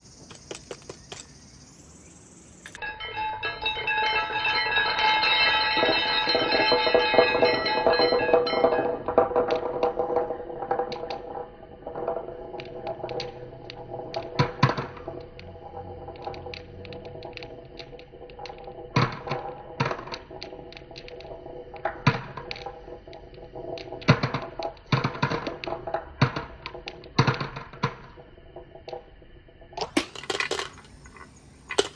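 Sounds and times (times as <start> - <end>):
marbles knocking on wood: 0.0 - 2.8, 5.4 - 29.1, 29.8 - 31.9
marbles rolling on wooden track: 0.1 - 31.9
metallophone notes: 2.7 - 9.2.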